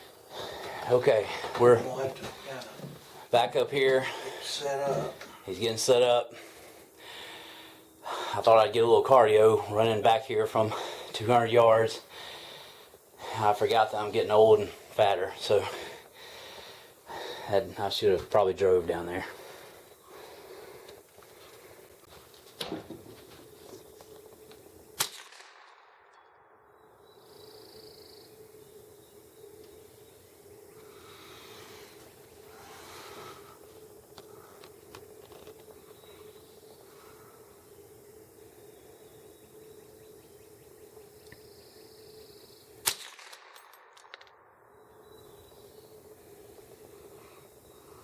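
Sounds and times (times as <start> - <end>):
rifle shot: 25.0 - 26.7, 42.8 - 44.5.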